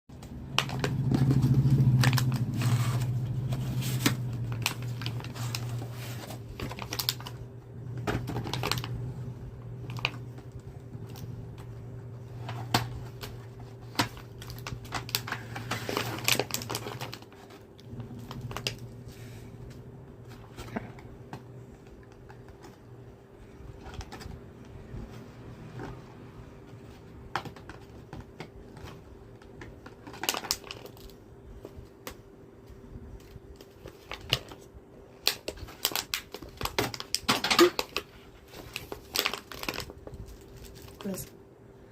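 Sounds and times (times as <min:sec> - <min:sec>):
packaging clicks and crinkles: 0:00.1 - 0:25.0, 0:26.9 - 0:41.4
steady low hum: 0:00.1 - 0:30.1.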